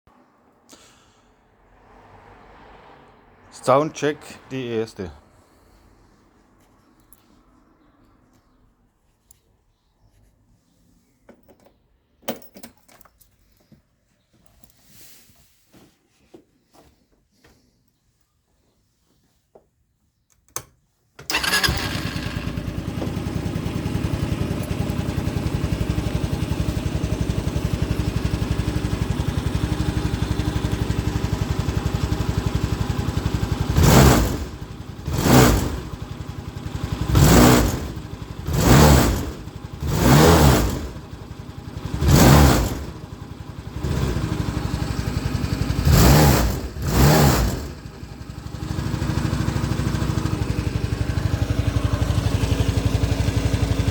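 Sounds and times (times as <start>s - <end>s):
scooter engine starting and idling: 21.2s - 53.9s
scooter engine revving: 21.3s - 53.9s.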